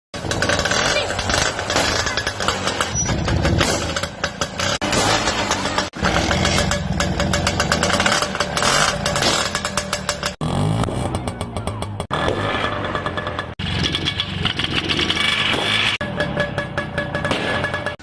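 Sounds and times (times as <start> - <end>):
scooter two-stroke engine running: 0.2 - 12.1.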